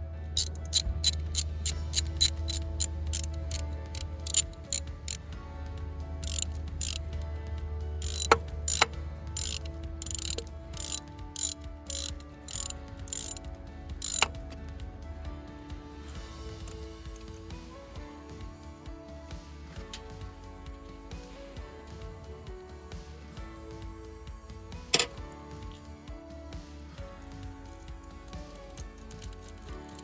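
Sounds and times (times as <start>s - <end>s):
electronic background music: 0.4s - 5.2s, 6.2s - 7.1s, 8.0s - 13.4s, 14.0s - 14.3s.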